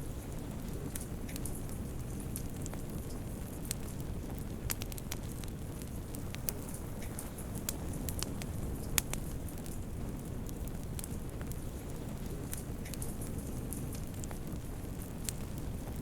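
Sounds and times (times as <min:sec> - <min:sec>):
fire crackles and pops: 0:00.0 - 0:16.0
low rumble of flames: 0:00.0 - 0:16.0.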